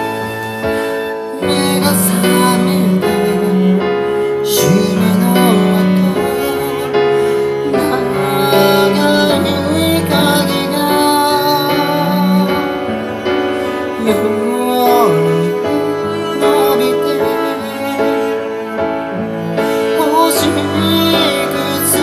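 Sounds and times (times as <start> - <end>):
pop song with piano over speakers: 0.0 - 22.0.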